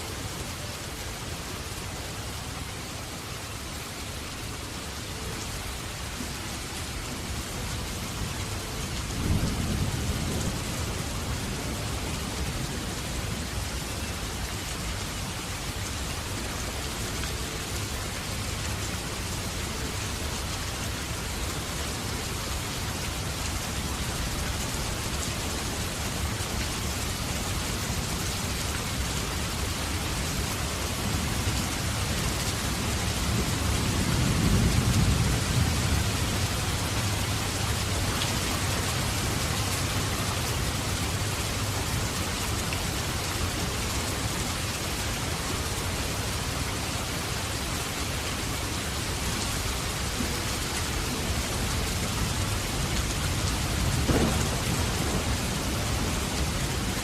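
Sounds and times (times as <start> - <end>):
heavy steady rain: 0.0 - 57.0
low thunder rumble: 53.4 - 56.9
sharp thunder crack: 54.0 - 56.0.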